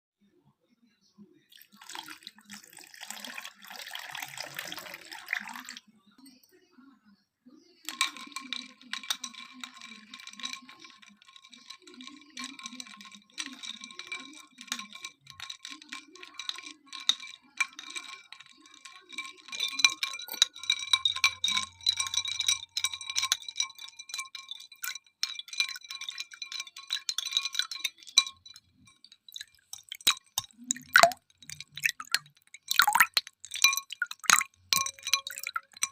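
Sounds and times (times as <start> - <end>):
ice cubes clinking in glass: 1.6 - 5.8, 7.9 - 35.9.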